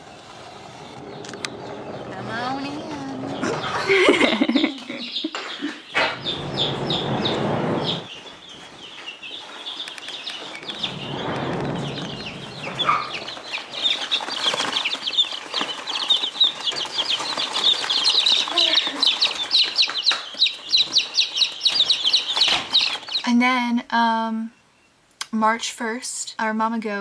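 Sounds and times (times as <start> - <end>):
rustling: 0.0 - 23.3
chicks peeping: 0.0 - 23.4.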